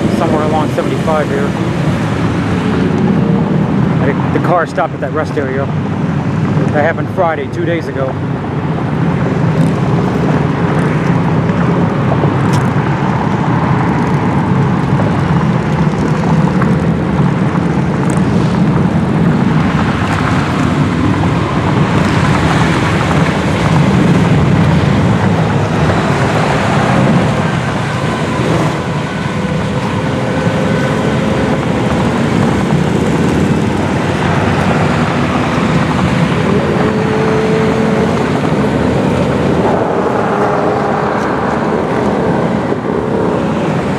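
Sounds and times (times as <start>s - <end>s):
road vehicle engines and tyres: 0.0s - 43.9s.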